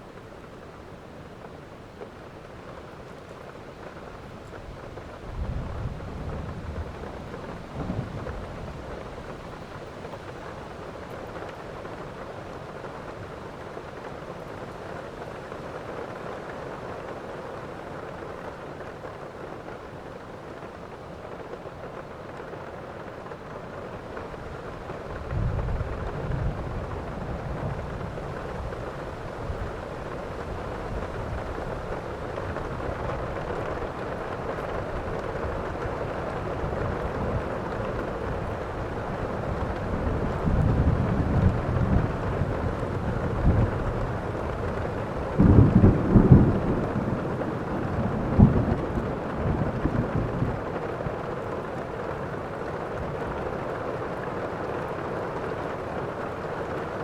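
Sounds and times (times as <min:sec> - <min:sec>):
steady rain falling: 0:00.0 - 0:57.0
thunder rumbling: 0:05.2 - 0:09.8, 0:25.0 - 0:53.6.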